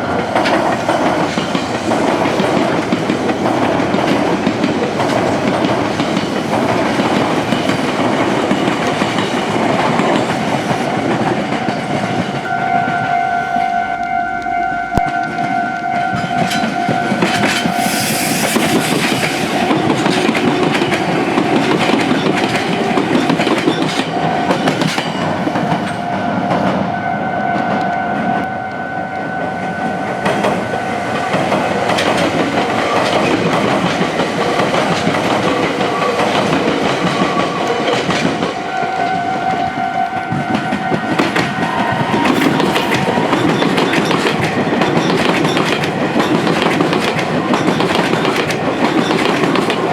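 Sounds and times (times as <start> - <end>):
train wheels clattering over joints: 0.1 - 12.5, 15.4 - 26.8, 30.2 - 38.8, 39.5 - 49.9
level crossing warning tone: 11.6 - 17.8.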